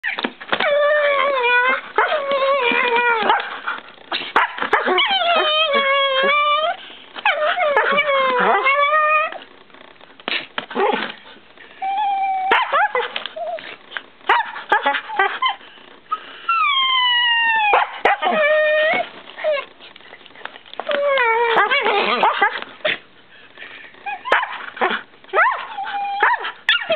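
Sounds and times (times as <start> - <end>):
dog howling and whining: 0.0 - 9.5, 11.8 - 15.6, 16.4 - 19.8, 20.7 - 23.0, 24.0 - 26.9.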